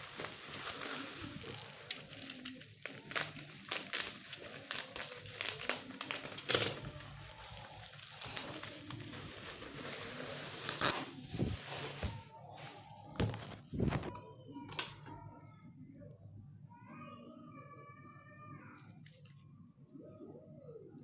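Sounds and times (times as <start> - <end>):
packaging crinkling and rustling: 0.0 - 15.4, 18.8 - 19.5.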